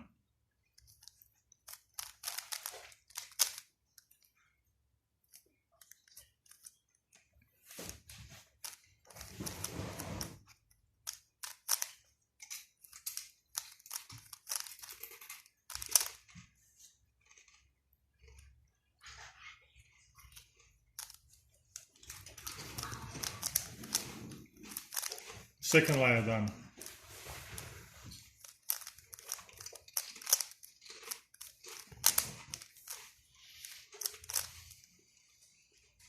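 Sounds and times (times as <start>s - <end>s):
puzzle cube clicking: 0.7s - 4.4s, 8.6s - 16.4s, 20.2s - 34.8s.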